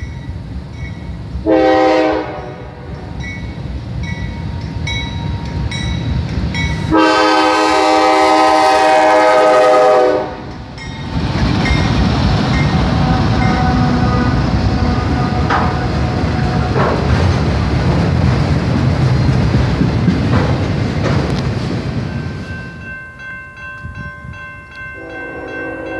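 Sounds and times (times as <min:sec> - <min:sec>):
train clanks: 0:00.0 - 0:25.9
train wheels rumbling on rails: 0:00.0 - 0:25.9
locomotive horn chord: 0:01.4 - 0:03.2, 0:06.9 - 0:10.5, 0:12.7 - 0:17.1, 0:25.0 - 0:25.9.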